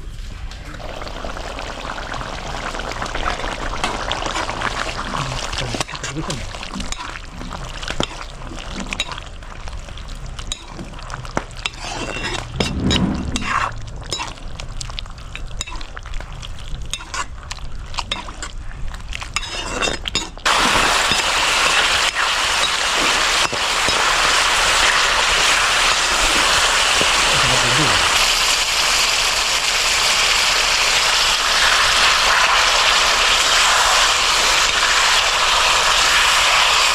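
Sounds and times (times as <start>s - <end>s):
utensil scraping cooking pot: 3.0s - 9.7s, 10.4s - 14.4s, 15.3s - 18.6s, 19.2s - 27.4s
loud steady hiss: 20.5s - 36.9s.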